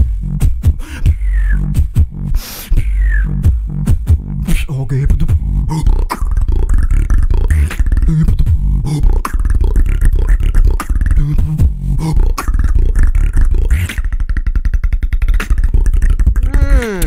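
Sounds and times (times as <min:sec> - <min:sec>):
person beatboxing: 0:00.0 - 0:17.0
hummed low notes: 0:16.4 - 0:17.0.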